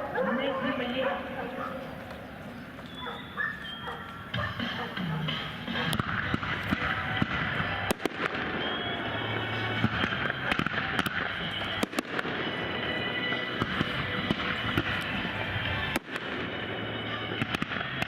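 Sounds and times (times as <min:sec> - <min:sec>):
fireworks bangs: 0:04.3 - 0:18.0.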